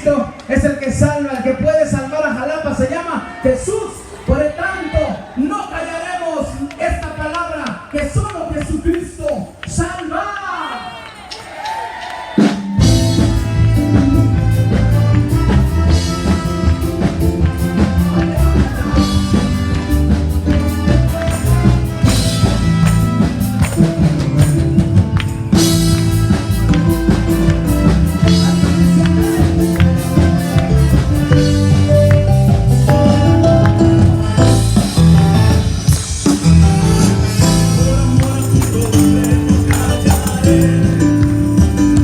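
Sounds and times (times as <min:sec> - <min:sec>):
band playing loud music: 0:12.4 - 0:42.0.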